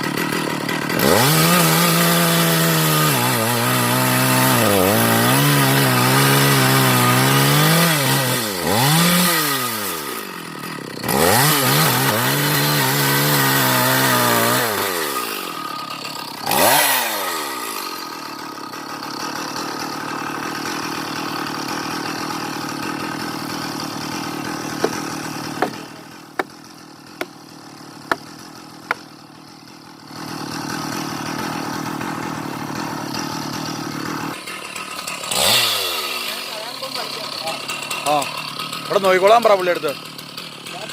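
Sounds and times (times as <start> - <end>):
chainsaw cutting timber: 0.0 - 40.9
sharp knocks: 24.8 - 25.8.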